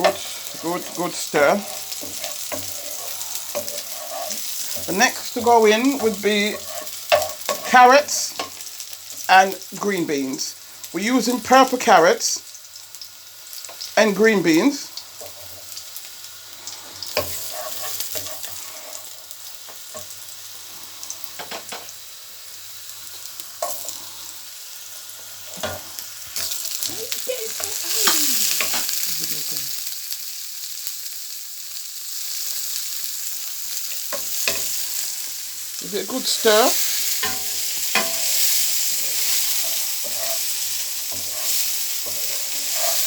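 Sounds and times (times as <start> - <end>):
utensil scraping a pan: 0.0 - 8.6, 16.7 - 19.3, 36.1 - 43.0
vegetables sizzling in a pan: 0.0 - 43.0.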